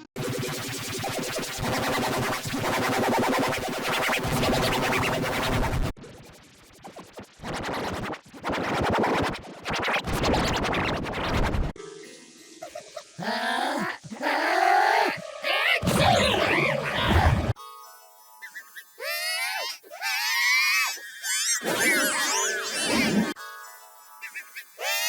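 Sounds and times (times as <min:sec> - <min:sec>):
distorted stuttering cartoon audio: 0:00.2 - 0:11.7, 0:15.4 - 0:17.6.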